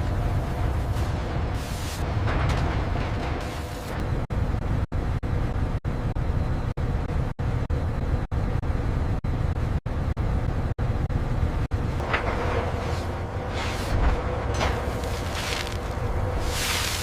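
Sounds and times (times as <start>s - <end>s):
low rumble: 0.0s - 17.0s.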